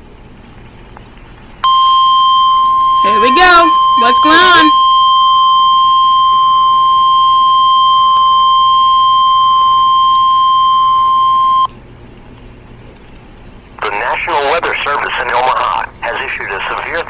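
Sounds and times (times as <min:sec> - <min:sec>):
high-pitched alarm tone: 0:01.6 - 0:11.7.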